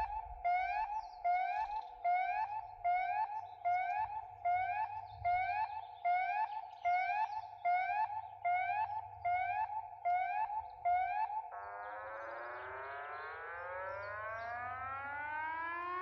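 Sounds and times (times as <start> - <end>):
electronic siren whoops: 0.0 - 16.0.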